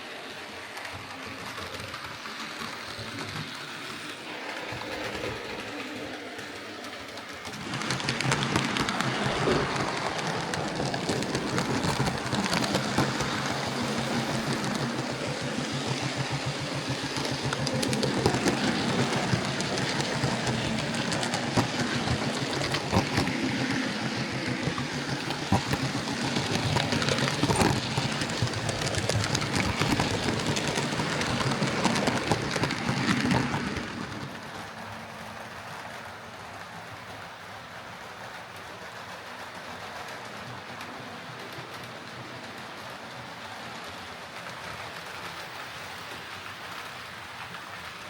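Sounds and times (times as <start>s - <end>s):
wheels clicking over rails: 0.0s - 48.0s
model train motor whirring: 0.1s - 36.0s.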